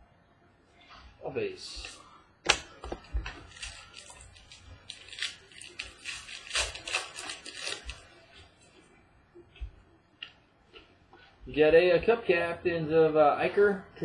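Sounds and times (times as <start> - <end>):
trading cards clicking and rustling: 1.8 - 8.1.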